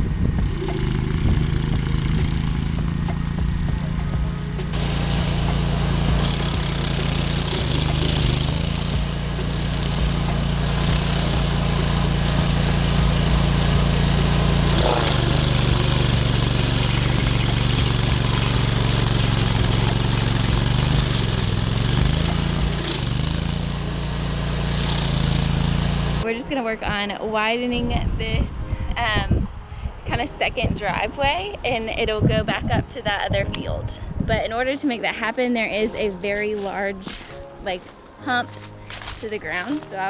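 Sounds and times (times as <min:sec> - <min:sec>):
machine engine under load: 0:00.0 - 0:26.2.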